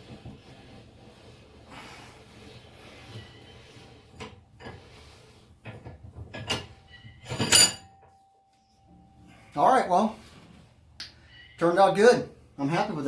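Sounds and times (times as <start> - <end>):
loud metal clank ringing: 6.6 - 8.1.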